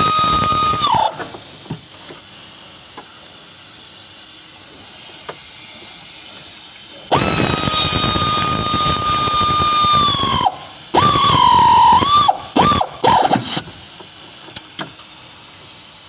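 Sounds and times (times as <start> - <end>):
power tool high whine: 0.0 - 1.4, 7.1 - 13.7.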